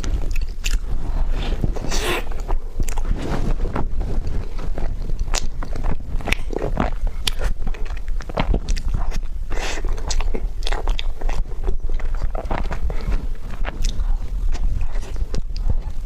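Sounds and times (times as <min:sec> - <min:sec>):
close chewing mouth clicks: 0:05.1 - 0:16.0.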